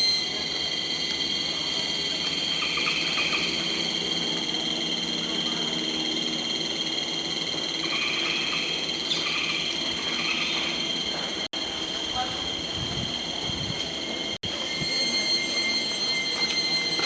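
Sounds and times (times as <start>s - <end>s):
frogs and insects chorus: 0.0s - 17.0s.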